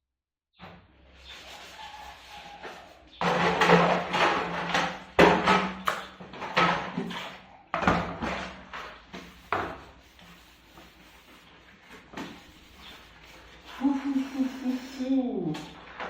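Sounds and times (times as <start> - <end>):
cooking pots clattering: 3.2 - 8.7.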